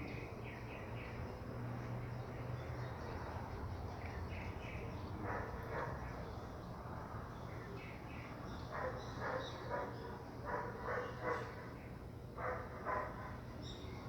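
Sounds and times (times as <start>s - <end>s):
dog barking: 8.8s - 11.6s, 12.4s - 13.3s.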